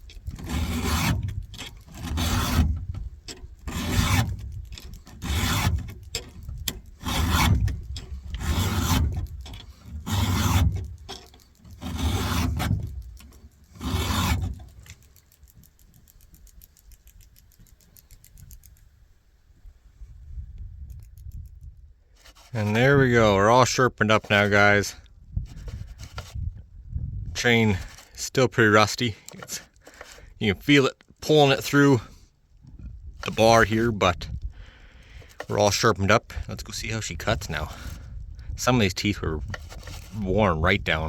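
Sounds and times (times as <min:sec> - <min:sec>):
hand file rasping on chainsaw chain: 0:00.0 - 0:18.7, 0:22.2 - 0:23.0, 0:23.7 - 0:26.5, 0:27.6 - 0:30.3, 0:35.2 - 0:41.0.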